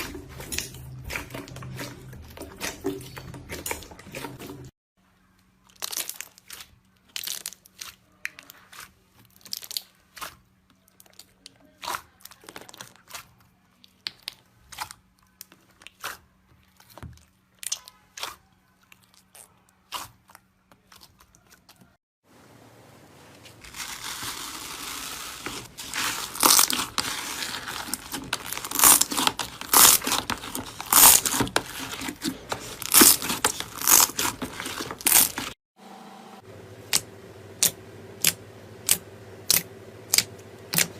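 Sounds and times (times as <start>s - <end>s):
crunchy slime crackling: 5.5s - 22.0s, 23.4s - 35.6s.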